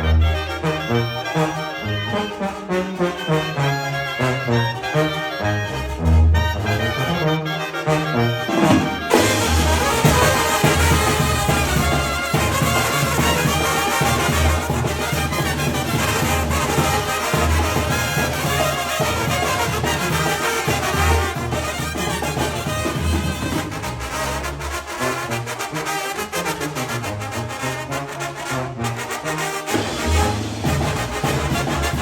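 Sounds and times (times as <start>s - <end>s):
brass band music: 0.0s - 32.0s
deep bass line: 9.0s - 15.0s.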